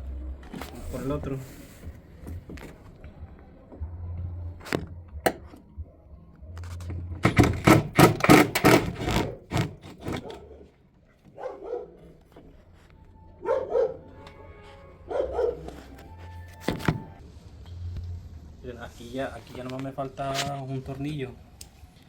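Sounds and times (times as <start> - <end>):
hand tool scraping on metal screws: 7.2 - 10.4.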